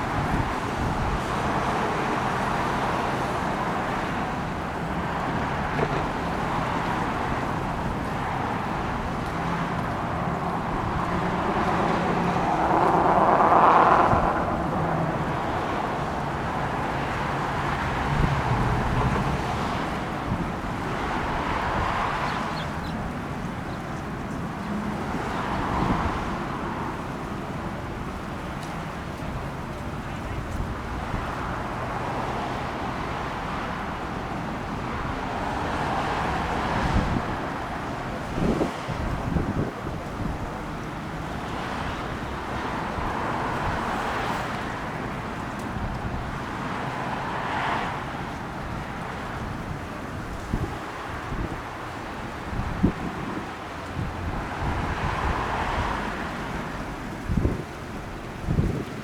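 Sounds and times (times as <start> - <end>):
road traffic: 0.0 - 59.0
wind buffeting microphone: 0.0 - 59.0
vehicle passing: 8.4 - 20.1, 35.1 - 48.4.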